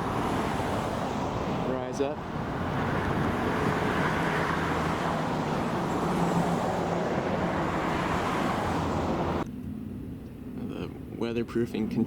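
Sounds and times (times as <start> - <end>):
road traffic rushing: 0.0 - 11.8.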